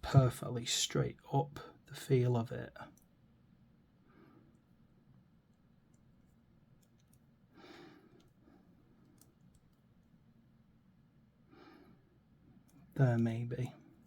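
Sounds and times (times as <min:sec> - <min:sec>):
soft breath: 0:04.0 - 0:04.9, 0:07.5 - 0:09.3, 0:11.4 - 0:12.9.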